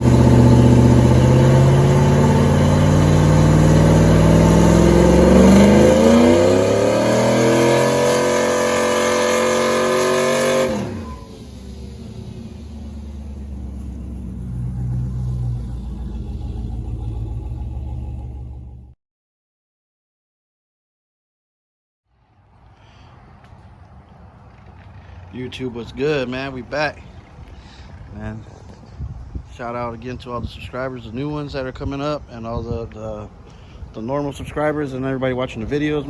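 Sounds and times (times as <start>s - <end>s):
car engine revving: 0.0s - 19.0s.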